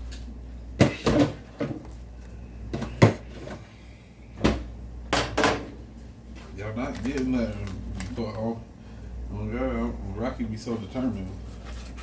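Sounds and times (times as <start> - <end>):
kitchen knocks and clatters: 0.8 - 1.9, 4.4 - 5.8.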